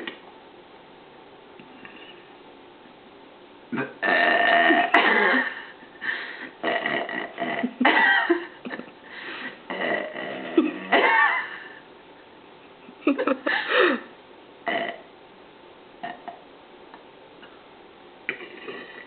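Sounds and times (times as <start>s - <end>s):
woman belching loudly: 3.7s - 5.5s, 6.6s - 8.2s, 9.7s - 11.3s, 14.7s - 15.1s, 16.0s - 16.4s.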